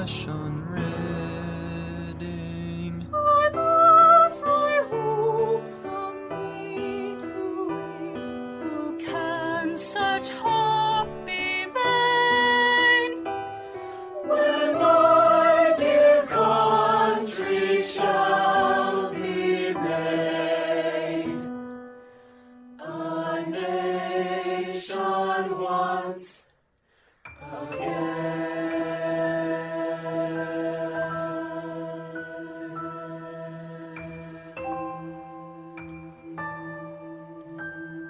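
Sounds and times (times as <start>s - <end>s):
choir singing held chords: 14.1s - 21.6s, 22.7s - 26.4s, 27.4s - 37.6s.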